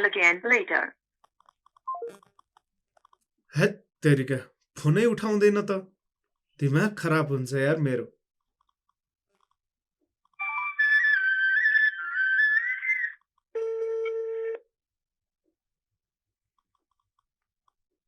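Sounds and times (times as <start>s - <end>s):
flute-like phone tune: 10.4s - 14.6s.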